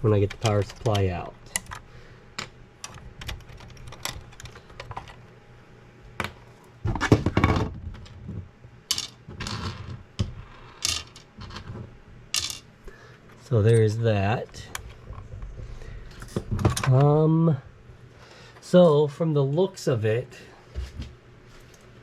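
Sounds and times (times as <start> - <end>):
metal parts and tools clattering: 8.9 - 10.0, 10.8 - 11.8, 12.4 - 12.7.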